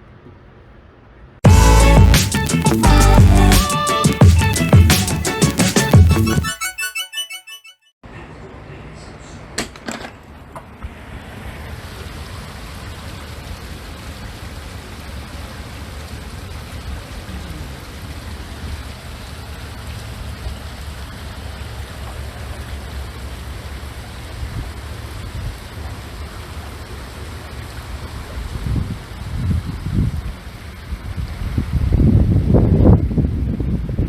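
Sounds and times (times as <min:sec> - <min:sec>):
heavy rain pouring: 0:01.5 - 0:06.5.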